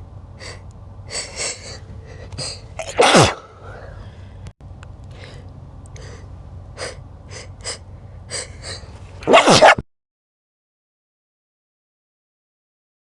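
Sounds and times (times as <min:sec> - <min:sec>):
person sneezing loudly: 0:02.4 - 0:03.7, 0:08.4 - 0:09.8.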